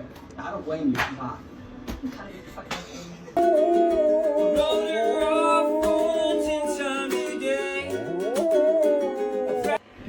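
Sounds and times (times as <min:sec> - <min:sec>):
plucked strings: 0:03.4 - 0:09.8
sustained melody line: 0:03.4 - 0:09.8.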